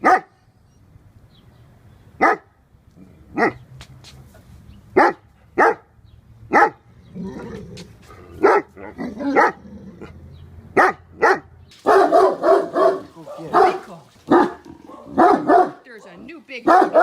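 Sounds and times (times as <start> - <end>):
dog barking: 0.0 - 0.4, 2.2 - 2.5, 3.4 - 3.6, 5.0 - 5.9, 6.5 - 6.8, 8.4 - 9.6, 10.8 - 15.8, 16.6 - 17.0
dog throaty growls: 6.9 - 10.5, 13.2 - 15.3.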